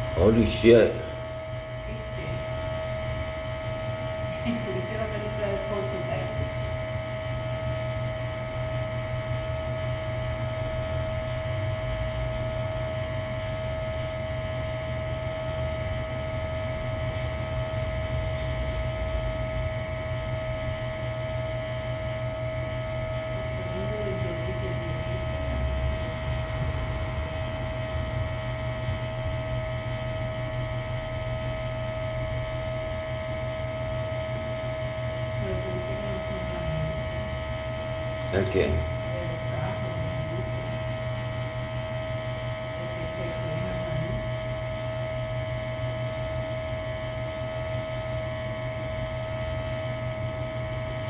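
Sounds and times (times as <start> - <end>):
electrical hum: 0.0 - 51.0
low drone: 19.9 - 29.9.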